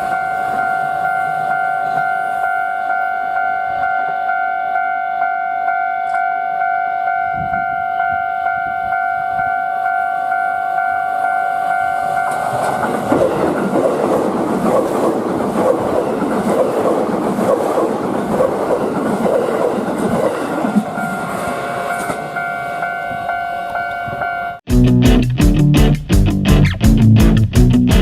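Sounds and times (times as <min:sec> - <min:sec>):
level crossing warning bell: 0:00.0 - 0:14.2, 0:18.0 - 0:24.6
train wheels clattering over rail joints: 0:12.3 - 0:20.9.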